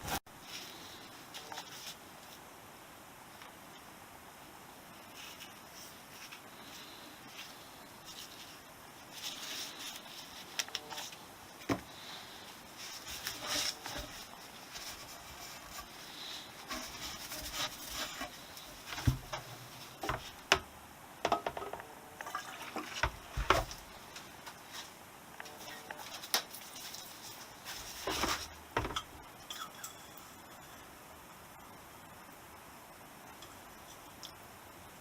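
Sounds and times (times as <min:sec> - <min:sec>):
dull thumps: 0:18.9 - 0:21.8.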